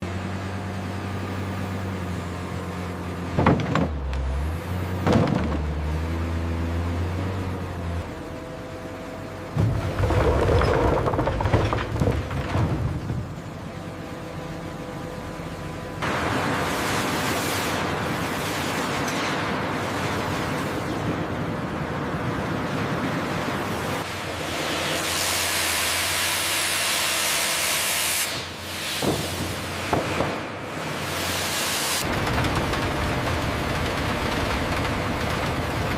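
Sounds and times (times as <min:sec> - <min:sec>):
sawmill machinery rumbling: 0:00.0 - 0:35.9
clattering knocks: 0:09.6 - 0:13.3
sawmill machinery humming: 0:21.6 - 0:35.9
loud even hiss: 0:24.2 - 0:32.2.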